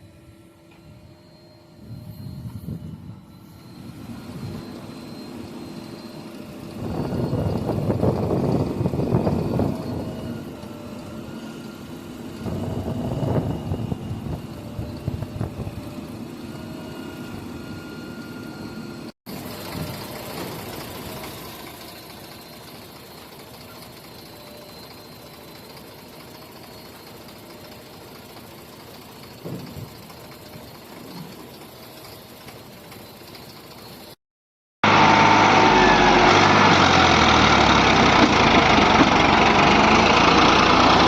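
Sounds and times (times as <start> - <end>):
diesel engine revving: 4.3 - 18.9, 34.8 - 41.0.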